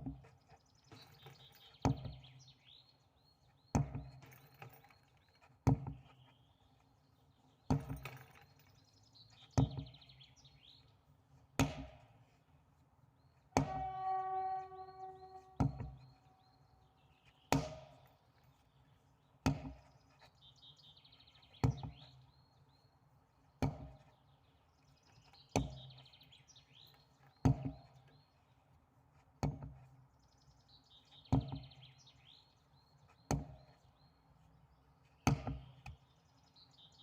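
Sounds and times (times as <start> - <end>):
sledgehammer striking a tyre: 1.8 - 2.2, 3.7 - 4.2, 9.6 - 10.0, 11.6 - 12.1, 13.6 - 14.0, 15.6 - 16.1, 17.5 - 18.0, 19.4 - 19.9, 23.6 - 24.1, 25.5 - 26.0, 27.4 - 27.9, 31.3 - 31.7, 33.3 - 33.6, 35.2 - 35.8
birds chirping: 13.1 - 28.6.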